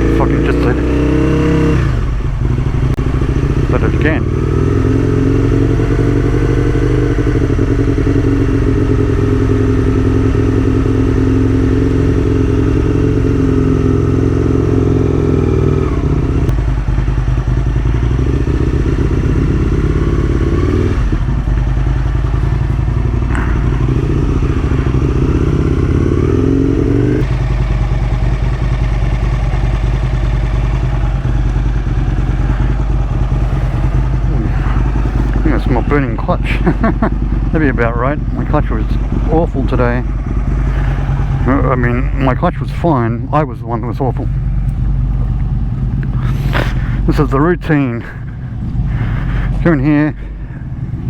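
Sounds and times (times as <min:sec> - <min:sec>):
motorcycle engine while riding: 0:00.0 - 0:51.0.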